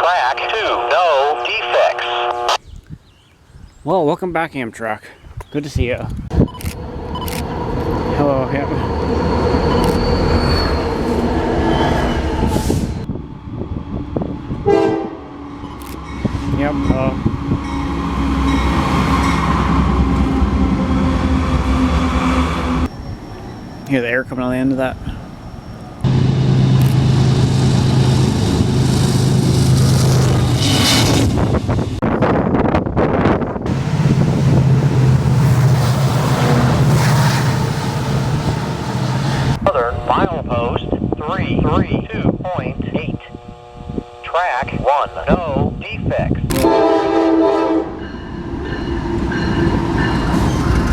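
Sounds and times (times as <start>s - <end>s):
wind buffeting microphone: 5.2s - 10.1s, 12.4s - 21.3s, 27.4s - 50.9s
train rushing past: 6.7s - 40.8s, 46.6s - 50.9s
high wheel squeal: 6.8s - 13.0s, 22.0s - 26.0s
train wheels rumbling on rails: 25.9s - 39.6s, 46.5s - 50.9s.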